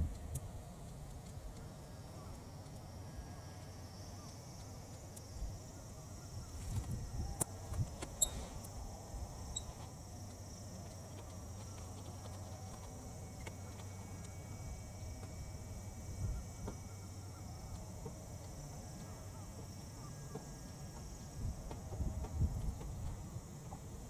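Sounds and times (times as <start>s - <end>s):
wind rumbling on microphone: 0.0s - 1.6s, 6.3s - 9.7s, 16.0s - 16.7s, 21.3s - 24.0s
faint fire crackles: 0.0s - 24.0s
high insect chirring: 1.8s - 24.0s.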